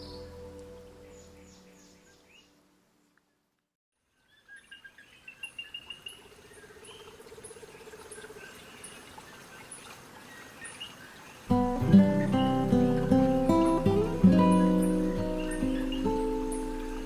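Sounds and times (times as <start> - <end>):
small birds chirping: 4.1 - 17.0.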